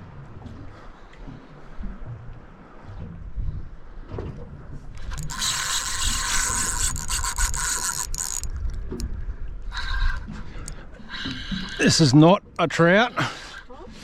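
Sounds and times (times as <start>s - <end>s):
fishing reel rasping: 5.0s - 9.0s.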